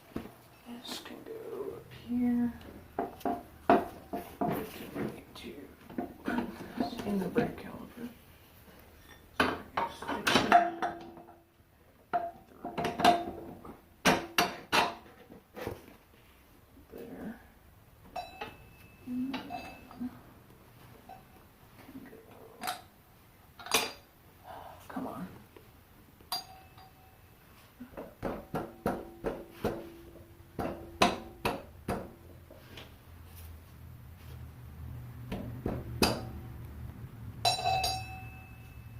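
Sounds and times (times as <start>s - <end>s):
metal tapping with metallic ring: 18.1s - 20.1s, 21.0s - 21.4s, 26.3s - 27.3s, 37.4s - 38.9s
metal parts and wrench clinking: 26.3s - 27.2s, 37.4s - 38.9s.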